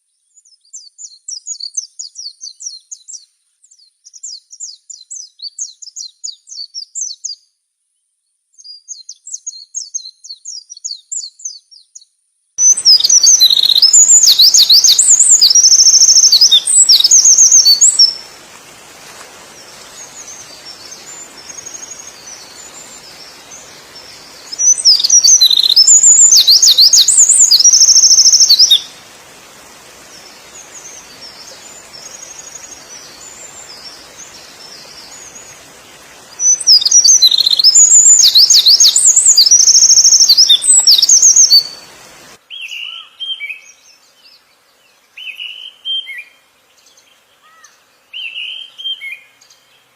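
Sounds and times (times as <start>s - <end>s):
bird chirping softly: 8.5s - 49.9s
songbird trilling and whistling: 12.6s - 18.2s, 20.0s - 28.9s, 36.4s - 41.8s
steady hiss: 12.6s - 42.6s.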